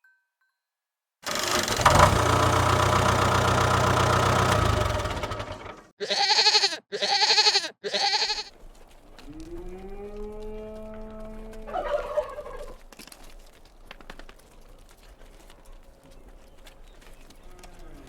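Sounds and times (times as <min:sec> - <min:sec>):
goat or sheep bleating: 0:06.0 - 0:08.5.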